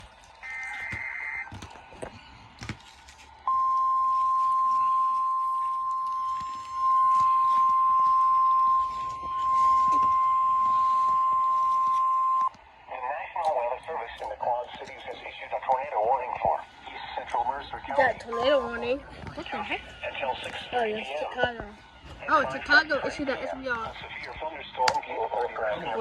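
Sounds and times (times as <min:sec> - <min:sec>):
digital data tones: 0:00.4 - 0:01.5, 0:03.5 - 0:12.5
steady alarm tone: 0:00.4 - 0:01.6, 0:03.4 - 0:12.6.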